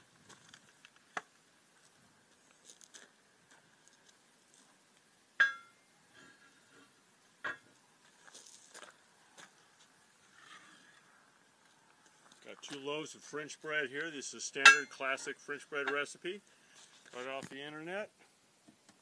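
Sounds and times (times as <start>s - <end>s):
ringing glass clink: 5.4s - 5.8s, 14.7s - 15.0s.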